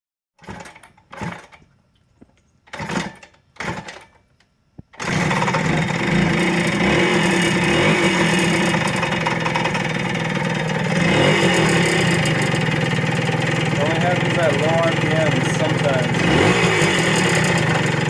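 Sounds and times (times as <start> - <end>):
engine running at low revs: 5.0 - 18.0
short noisy bursts: 10.9 - 18.0.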